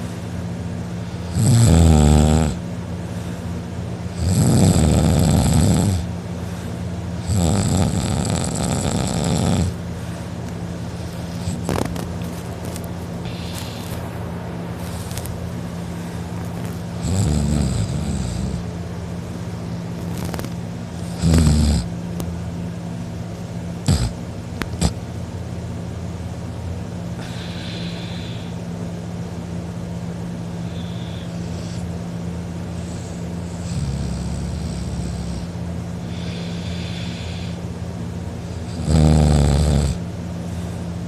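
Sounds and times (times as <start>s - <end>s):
steady low hum: 0.0s - 41.0s
man snoring loudly: 1.2s - 2.6s, 4.1s - 6.1s, 7.2s - 9.8s, 17.0s - 18.6s, 20.1s - 21.9s, 23.8s - 24.2s, 32.8s - 37.6s, 38.6s - 40.0s.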